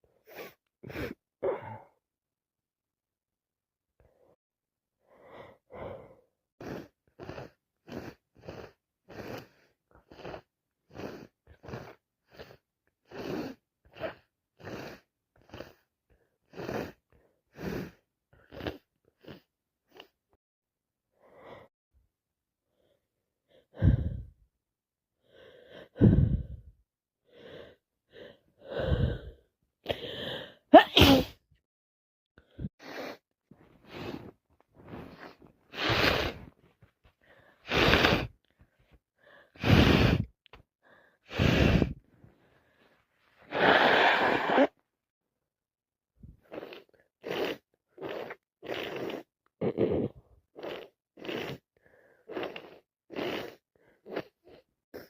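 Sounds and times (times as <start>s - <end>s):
short breathy sounds: 25.2s - 26.7s, 32.4s - 44.8s
person sneezing loudly: 30.8s - 31.4s, 43.5s - 44.7s.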